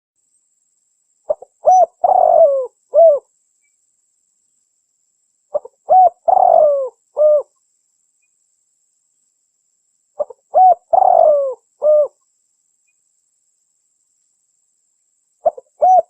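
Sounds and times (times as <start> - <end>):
dove cooing: 1.3 - 3.2, 5.5 - 7.5, 10.2 - 12.2, 15.4 - 16.0.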